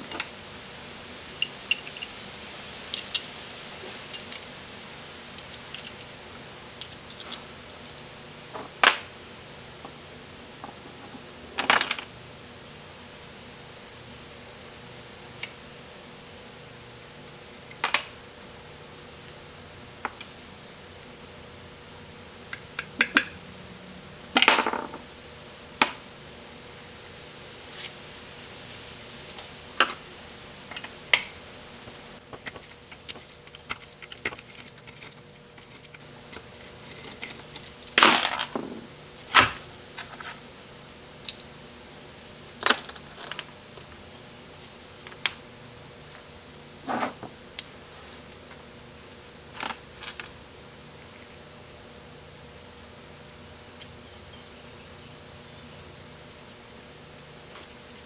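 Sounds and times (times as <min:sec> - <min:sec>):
faint steady hum: 0:00.0 - 0:58.0
metal parts clinking: 0:01.4 - 0:02.1, 0:02.9 - 0:03.3, 0:04.1 - 0:04.5, 0:37.0 - 0:38.7, 0:42.6 - 0:44.0.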